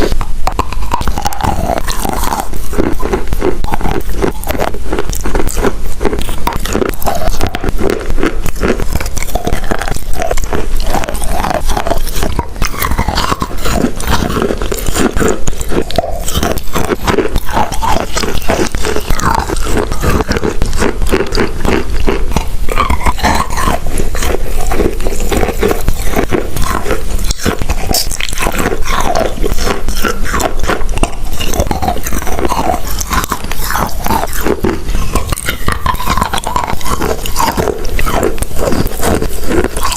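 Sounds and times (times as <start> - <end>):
person crunching chalk: 0.0 - 39.9.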